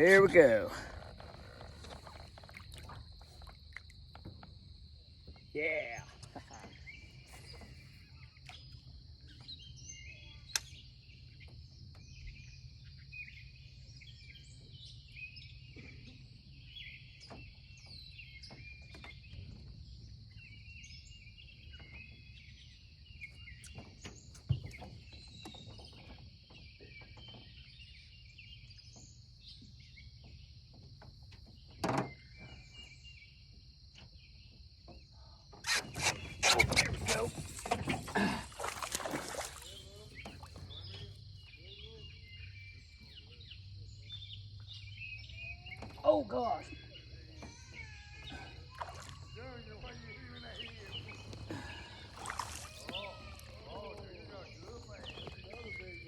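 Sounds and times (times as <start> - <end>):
birds chirping and singing: 35.7 - 56.0.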